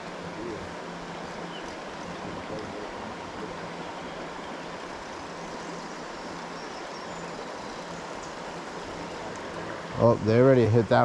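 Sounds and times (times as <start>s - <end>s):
stream water rushing: 0.0s - 11.0s.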